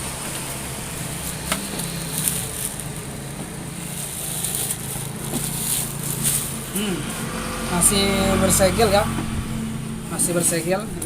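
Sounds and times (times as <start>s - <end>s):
plastic packaging crinkling: 1.0s - 6.8s.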